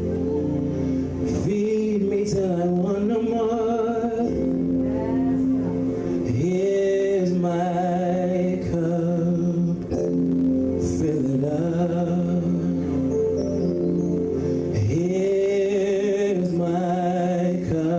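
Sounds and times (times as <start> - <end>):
held instrumental chords: 0.0 - 17.9
person singing melody: 0.0 - 17.9.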